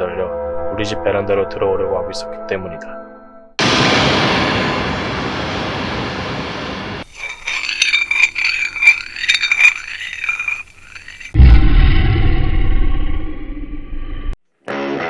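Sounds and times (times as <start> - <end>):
scraping and clinking: 7.0 - 11.4.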